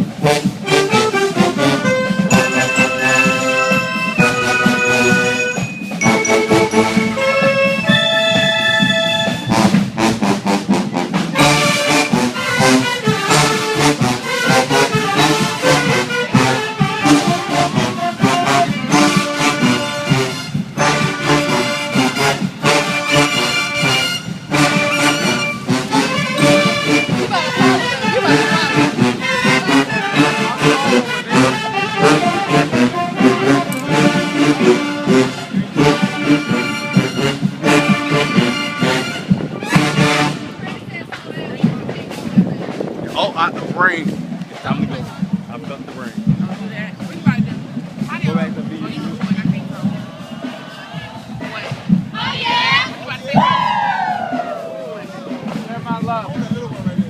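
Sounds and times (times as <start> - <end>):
brass horns playing: 0.0 - 40.8
drums beating: 0.0 - 57.0.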